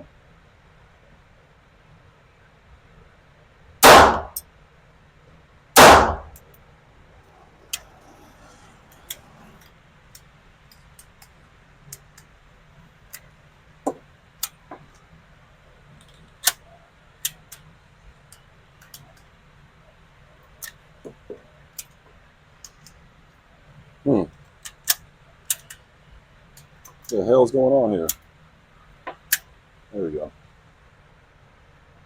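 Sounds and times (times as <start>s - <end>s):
sharp clicks and cracks: 7.6s - 12.3s, 24.6s - 25.8s, 29.1s - 29.5s.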